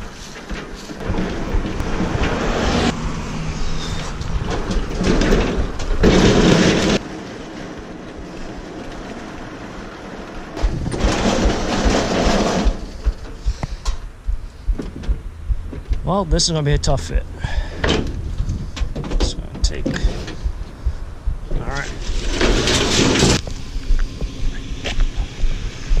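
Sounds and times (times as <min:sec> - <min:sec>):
appliance scraping and grinding: 0:00.0 - 0:13.1, 0:21.8 - 0:23.4
knocks: 0:10.6 - 0:14.0.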